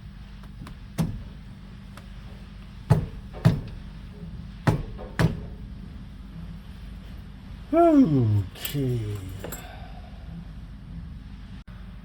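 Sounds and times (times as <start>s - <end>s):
hand tools knocking on metal: 2.0s - 5.6s.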